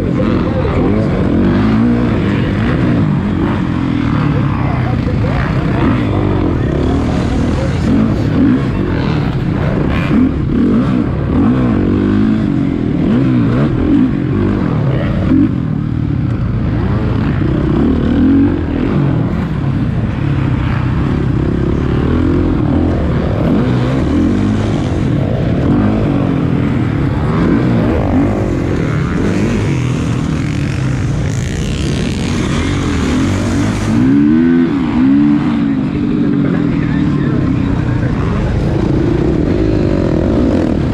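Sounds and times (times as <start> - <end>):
dirt bike engines revving: 0.0 - 40.9.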